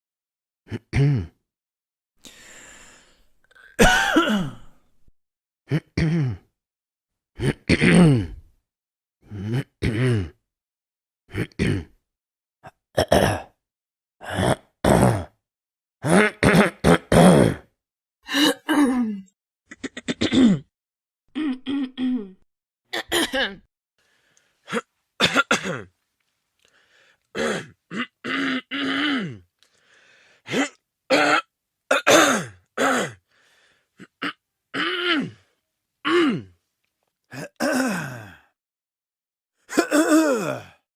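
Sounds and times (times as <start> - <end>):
man clearing his throat: 0.7 - 1.4, 3.8 - 4.8, 5.7 - 6.5, 7.4 - 8.4, 9.3 - 10.4, 11.3 - 12.0, 13.0 - 13.6, 16.0 - 17.7, 18.3 - 20.7, 23.0 - 23.6, 24.7 - 25.9, 27.4 - 29.4, 30.5 - 33.2, 34.0 - 35.4, 36.1 - 36.6, 37.3 - 38.3, 39.7 - 40.8
short harsh coughs: 3.8 - 4.8, 13.0 - 13.5, 16.0 - 17.7, 19.7 - 20.6, 23.0 - 23.6, 24.7 - 25.9, 27.4 - 29.4, 30.5 - 33.2.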